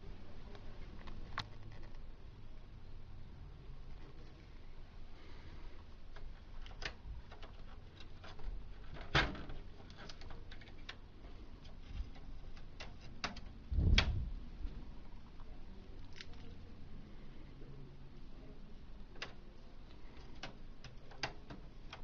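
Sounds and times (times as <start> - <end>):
plastic parts clicking: 19.1 - 22.0.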